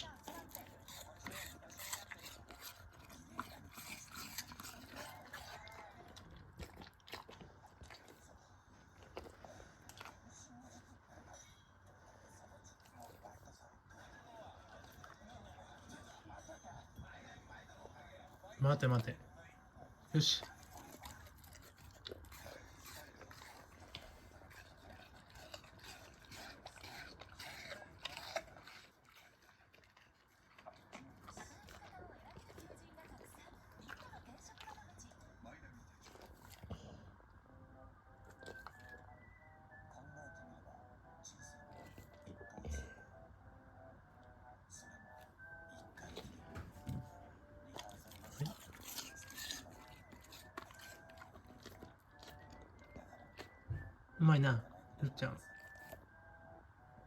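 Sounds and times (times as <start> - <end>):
dog chewing crisp crunches: 0.0 - 10.4, 20.1 - 37.0, 38.2 - 39.4, 44.9 - 56.2.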